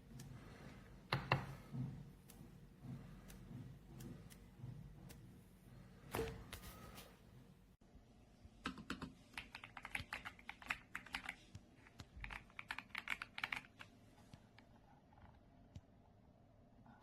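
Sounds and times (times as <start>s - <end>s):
mechanical keyboard typing: 8.7s - 13.9s.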